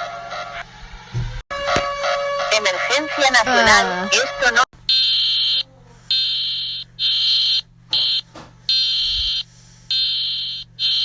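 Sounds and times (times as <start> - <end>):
high-pitched alarm beeps: 4.9 - 11.0.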